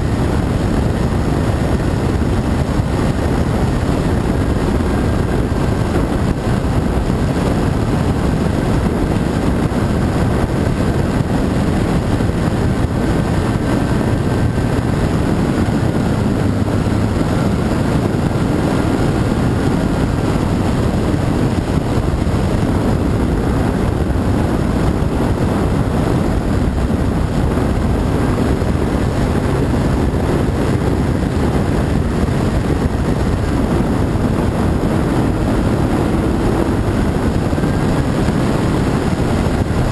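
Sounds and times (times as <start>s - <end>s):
loud low rumble: 0.0s - 39.9s.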